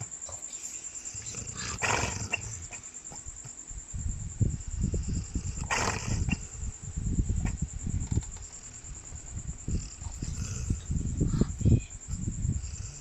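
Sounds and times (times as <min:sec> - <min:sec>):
dog snoring: 0:01.0 - 0:02.8, 0:09.6 - 0:11.6.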